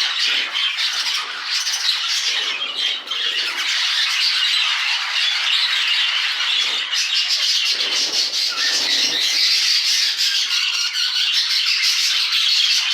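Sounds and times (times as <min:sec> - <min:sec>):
budgerigars chattering and squawking: 0:00.0 - 0:12.9.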